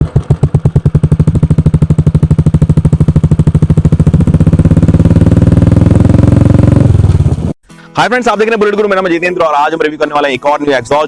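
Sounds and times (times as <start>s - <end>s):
motorcycle exhaust thumping: 0.0s - 7.6s.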